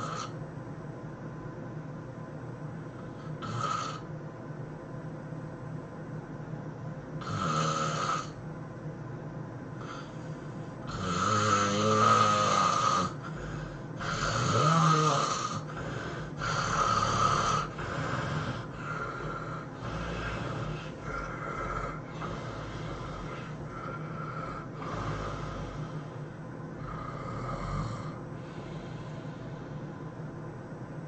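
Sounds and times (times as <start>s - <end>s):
person snoring heavily: 0.0s - 0.4s, 3.2s - 4.1s, 7.2s - 8.4s, 9.8s - 26.2s, 26.8s - 29.5s.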